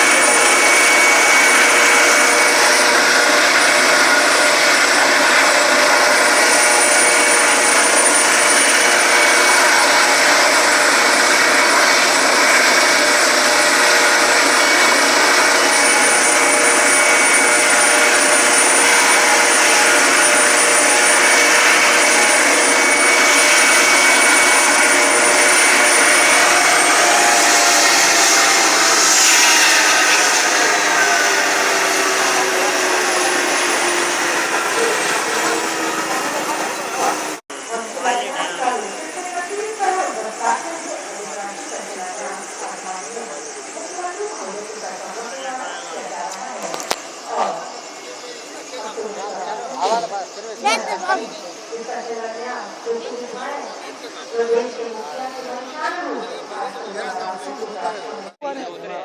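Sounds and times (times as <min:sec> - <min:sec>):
helicopter running: 0:00.0 - 0:58.4
high-pitched turbine whine: 0:00.0 - 0:58.4.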